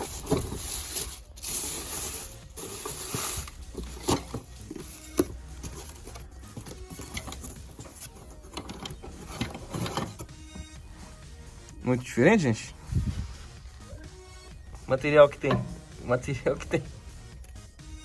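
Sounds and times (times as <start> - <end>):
metal parts clicking and rattling: 0.0 - 10.5.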